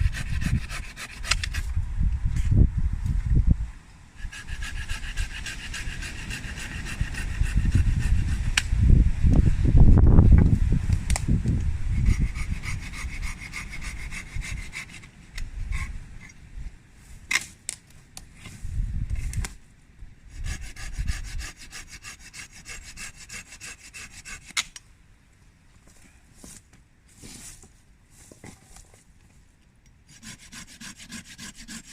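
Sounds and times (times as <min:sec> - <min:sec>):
hand saw cutting wood: 0:00.0 - 0:01.7, 0:04.2 - 0:08.6, 0:12.0 - 0:15.0, 0:20.4 - 0:24.7, 0:30.1 - 0:31.9
wind buffeting microphone: 0:00.0 - 0:16.8, 0:18.6 - 0:19.6, 0:20.3 - 0:21.6.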